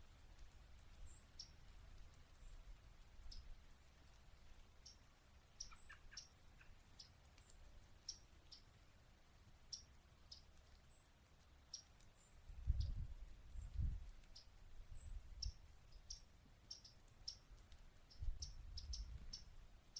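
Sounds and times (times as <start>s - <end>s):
warbler chip calls: 1.0s - 1.6s, 4.8s - 8.8s, 9.7s - 11.0s, 11.7s - 13.0s, 14.3s - 19.6s.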